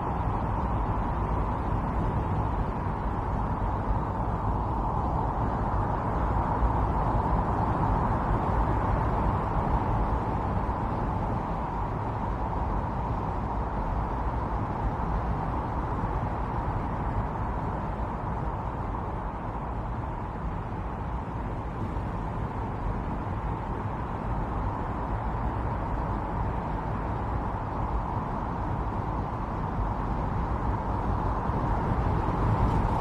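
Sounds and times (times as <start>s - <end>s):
strong storm wind blowing: 28.6s - 33.0s.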